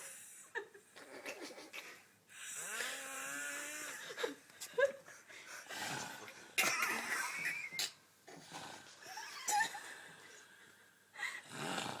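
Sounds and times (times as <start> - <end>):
woman snoring: 2.4 - 4.1, 11.4 - 12.0.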